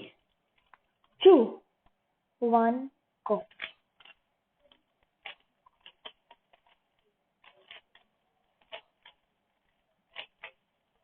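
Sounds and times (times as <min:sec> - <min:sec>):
puzzle cube plastic clicks: 0:03.4 - 0:11.0.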